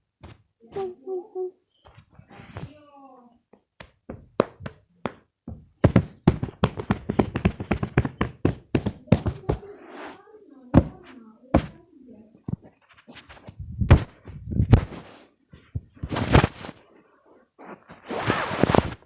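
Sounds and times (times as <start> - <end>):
rapid sharp taps and knocks: 5.8 - 9.6.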